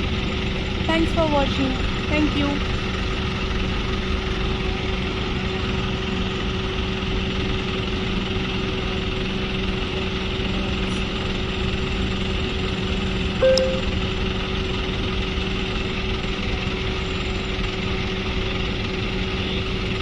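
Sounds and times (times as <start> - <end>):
large engine idling: 0.0 - 13.3.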